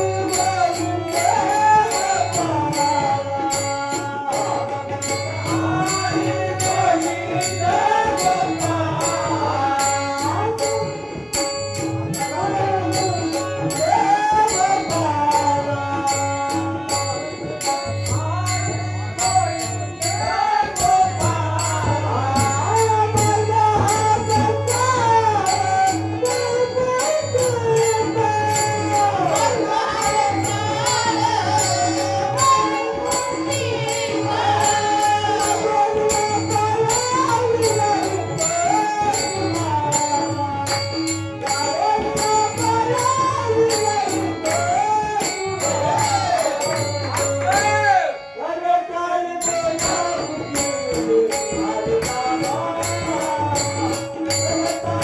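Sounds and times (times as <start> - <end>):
person singing devotional song: 0.0 - 55.0
rhythmic jingling percussion: 0.0 - 55.0
tabla: 0.0 - 55.0.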